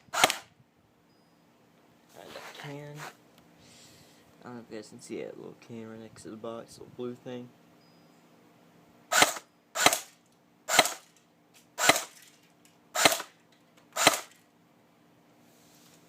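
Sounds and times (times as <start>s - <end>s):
suppressed airsoft rifle shots: 0.1s - 0.5s, 9.1s - 10.1s, 10.7s - 11.0s, 11.8s - 12.2s, 13.0s - 13.3s, 14.0s - 14.3s.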